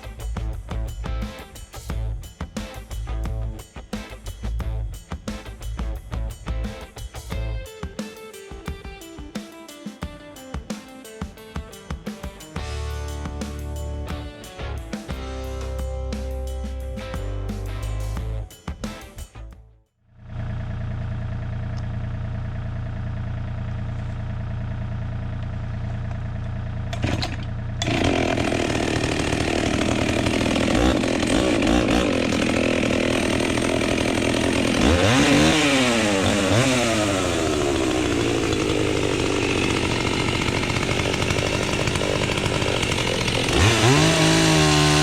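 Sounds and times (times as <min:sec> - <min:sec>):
chainsaw revving: 0:26.9 - 0:45.0.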